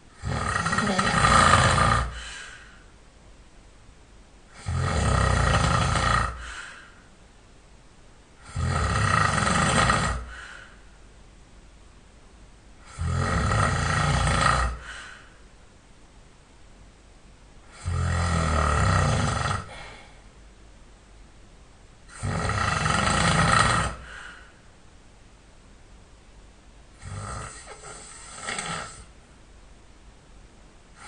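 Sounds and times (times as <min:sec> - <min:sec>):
person snoring loudly: 0:00.1 - 0:02.4, 0:04.5 - 0:06.9, 0:08.4 - 0:10.5, 0:12.8 - 0:15.0, 0:17.7 - 0:20.0, 0:22.1 - 0:24.4, 0:27.0 - 0:29.1.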